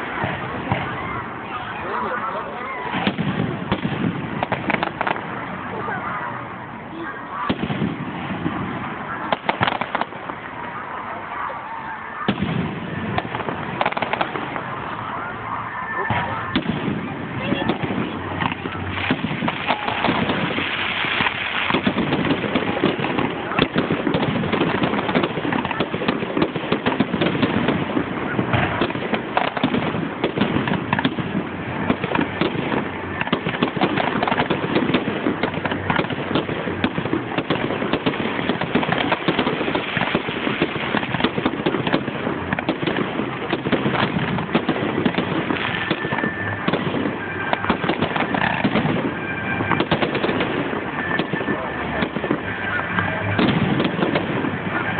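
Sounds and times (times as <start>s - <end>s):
fireworks crackling and banging: 0.0s - 54.9s.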